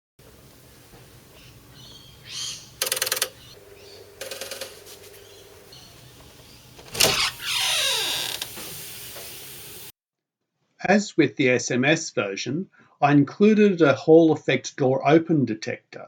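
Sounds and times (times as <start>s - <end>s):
electric lock buzzing: 2.8s - 9.9s
door creaking: 4.2s - 9.4s.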